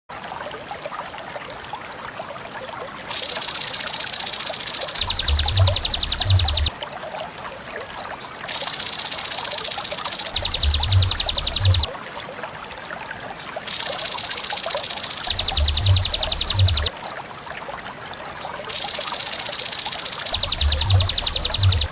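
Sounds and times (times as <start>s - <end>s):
shrill insect buzzing call: 3.1s - 6.7s, 8.5s - 11.9s, 13.7s - 16.9s, 18.7s - 21.9s.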